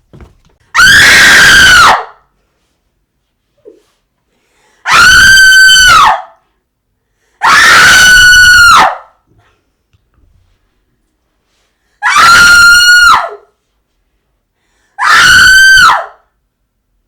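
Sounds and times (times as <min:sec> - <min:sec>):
loud high-pitched screams: 0:00.7 - 0:02.2, 0:04.8 - 0:06.4, 0:07.4 - 0:09.1, 0:12.0 - 0:13.4, 0:15.0 - 0:16.2.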